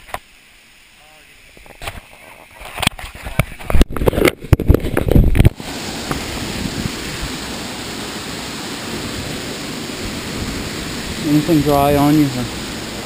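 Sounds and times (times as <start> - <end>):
water splashing and knocks: 1.6 - 13.0
waterfall rushing: 5.3 - 13.0.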